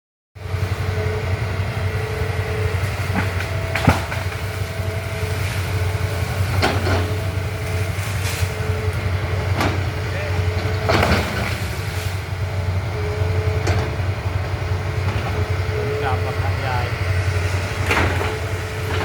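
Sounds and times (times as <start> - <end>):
excavator diesel engine running: 0.4 - 19.0
metallic knocks and creaks: 13.6 - 14.1.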